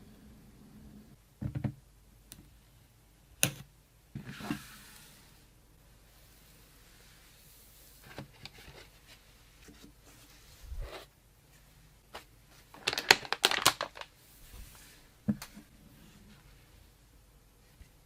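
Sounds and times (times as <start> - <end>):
packaging crinkling and clicking: 12.8 - 14.1.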